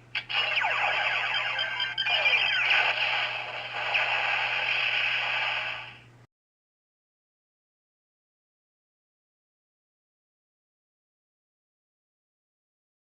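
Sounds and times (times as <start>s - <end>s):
toy electronic sound effect: 0.2s - 6.0s.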